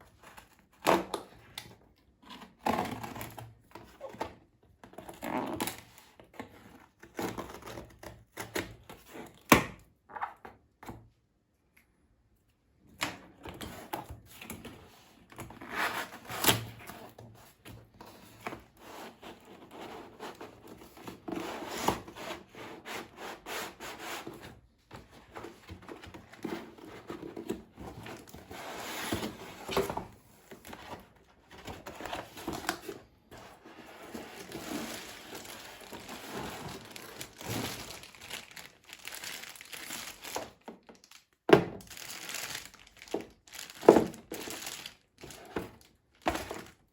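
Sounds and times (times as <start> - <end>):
wrapping crinkling and rustling: 25.3 - 46.9.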